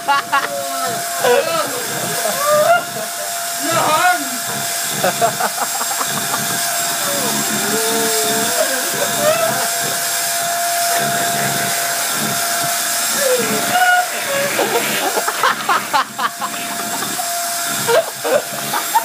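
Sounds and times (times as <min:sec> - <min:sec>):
vacuum cleaner running: 0:00.0 - 0:19.0
high-pitched voice-like sounds: 0:07.0 - 0:09.6.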